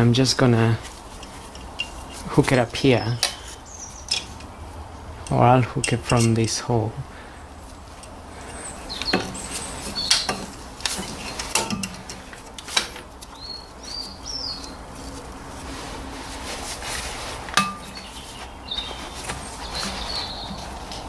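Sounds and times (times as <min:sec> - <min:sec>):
metal clinks and knocks: 0:01.1 - 0:02.2
bird chirps: 0:03.0 - 0:04.6, 0:08.4 - 0:10.5, 0:13.3 - 0:14.8, 0:17.8 - 0:20.7.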